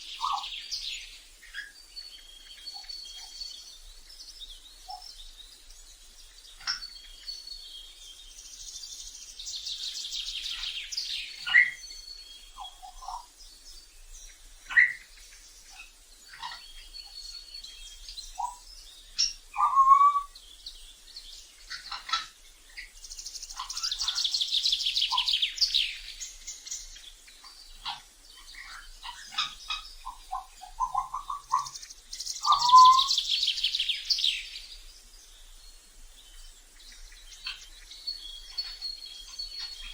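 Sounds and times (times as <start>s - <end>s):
parrots whistling and chirping: 19.5s - 20.4s, 32.4s - 33.2s.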